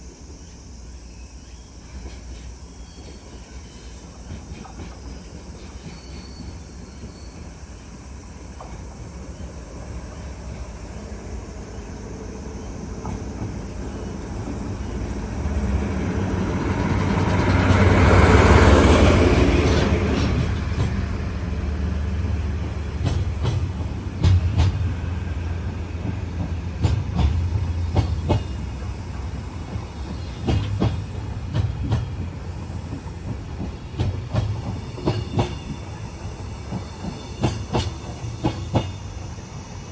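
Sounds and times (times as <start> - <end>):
wheels clicking over rail joints: 22.6 - 36.0.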